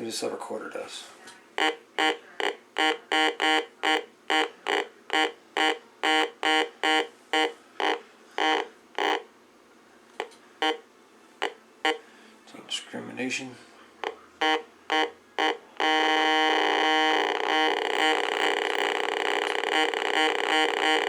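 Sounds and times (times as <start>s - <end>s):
metal detector buzzy beeps: 1.6s - 9.3s, 10.6s - 10.8s, 11.4s - 12.0s, 14.0s - 21.0s.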